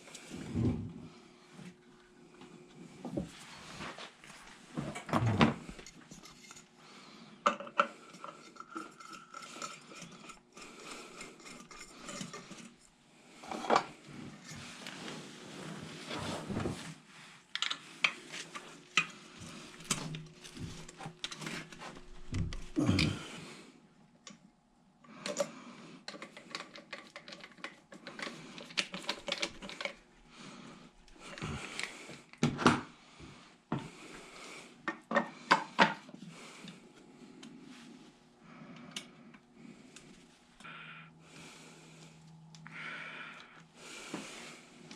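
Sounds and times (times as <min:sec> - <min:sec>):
pump parts and tools clinking: 0:07.4 - 0:12.8.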